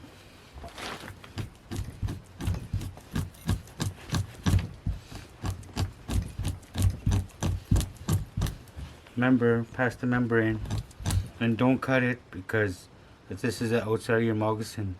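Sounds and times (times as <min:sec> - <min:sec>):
fleshing tool scraping hide: 0:00.6 - 0:09.2, 0:09.8 - 0:11.5.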